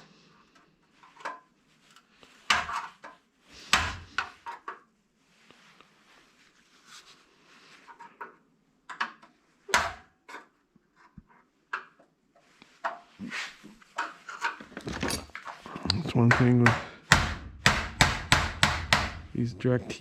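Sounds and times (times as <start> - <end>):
tools knocking and scraping: 1.0 - 4.9, 7.9 - 19.4.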